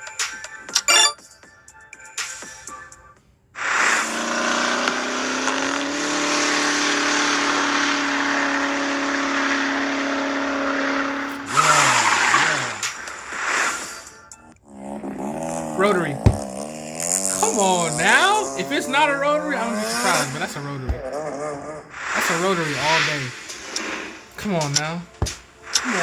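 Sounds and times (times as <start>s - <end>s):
rotary engine revving high: 3.8s - 12.8s, 15.8s - 21.2s.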